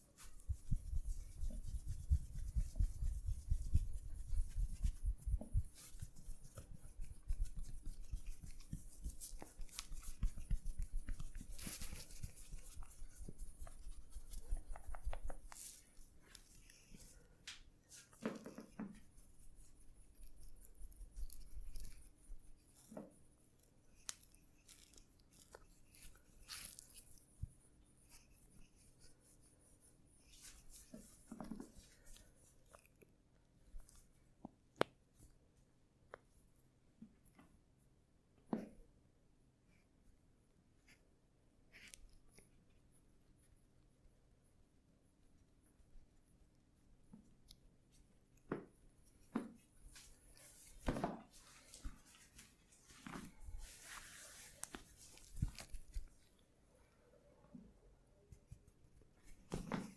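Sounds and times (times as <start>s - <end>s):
hands rubbing skin and hair: 0.0s - 23.3s, 23.9s - 32.9s, 47.9s - 56.4s.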